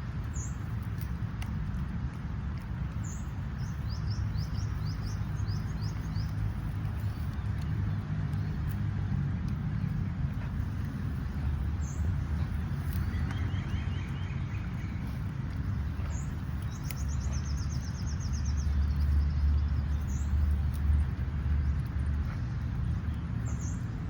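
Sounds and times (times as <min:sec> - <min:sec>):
small birds chirping: 0:00.0 - 0:24.0
steady low rumble: 0:00.0 - 0:24.0.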